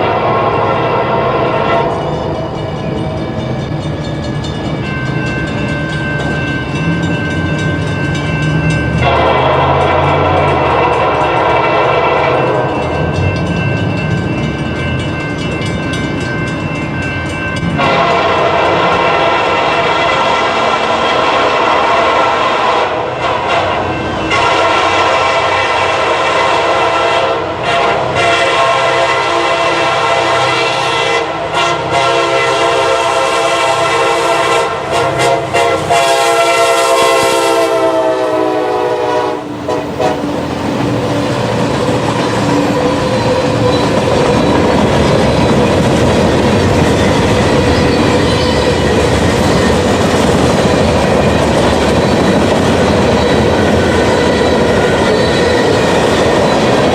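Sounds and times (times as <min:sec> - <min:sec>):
freight train horn blasts: 0:00.0 - 0:02.4, 0:08.9 - 0:13.2, 0:17.7 - 0:40.5
freight cars rolling and clacking: 0:39.5 - 0:56.9.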